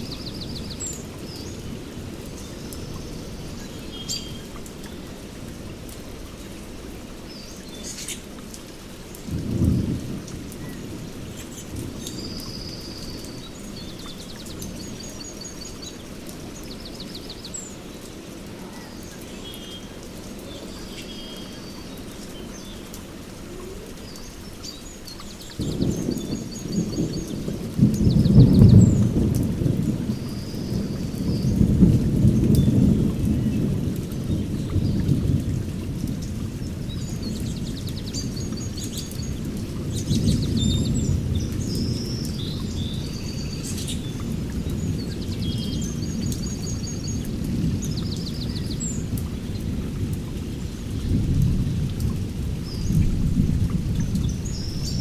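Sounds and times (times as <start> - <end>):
steady rain: 0.0 - 55.0
birds calling and trilling: 7.2 - 8.5
thunder rumbling: 9.2 - 13.4, 25.5 - 55.0.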